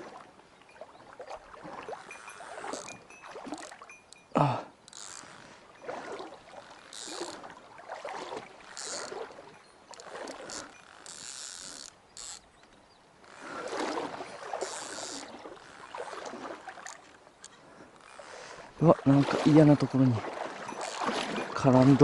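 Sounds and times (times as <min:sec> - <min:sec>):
stream water: 0:00.0 - 0:22.0
fishing reel cranking: 0:01.9 - 0:05.6, 0:06.5 - 0:07.5, 0:08.6 - 0:12.5, 0:13.2 - 0:16.3, 0:16.9 - 0:18.6, 0:20.7 - 0:21.5.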